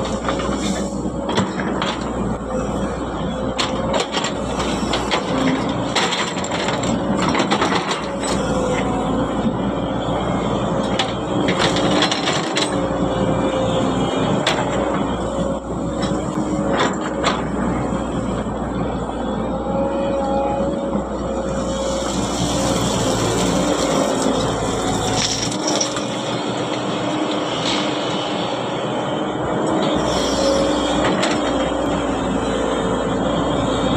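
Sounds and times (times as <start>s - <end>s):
excavator diesel engine running: 0.0s - 33.9s.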